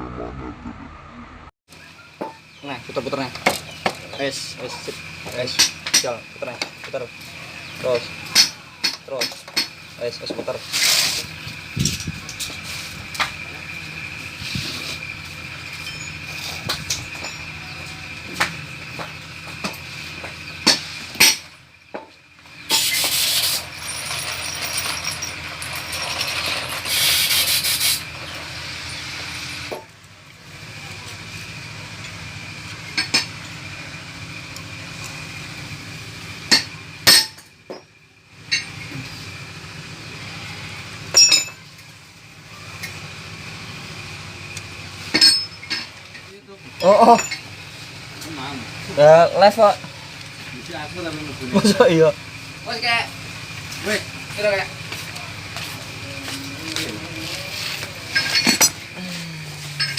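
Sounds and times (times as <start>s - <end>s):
metal engine parts and tools clinking: 1.8s - 59.9s
loud hiss: 22.7s - 23.7s, 26.9s - 29.6s.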